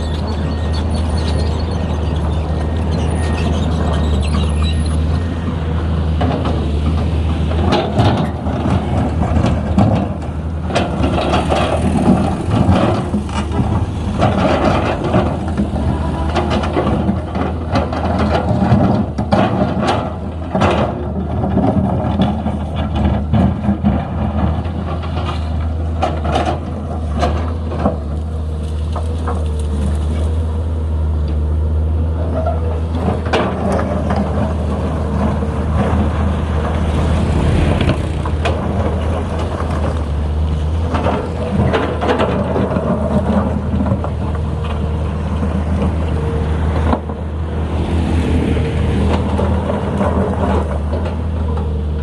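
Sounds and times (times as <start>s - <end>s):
excavator diesel engine drone: 0.0s - 52.0s
knocks and clatter: 6.1s - 30.2s, 32.4s - 47.2s.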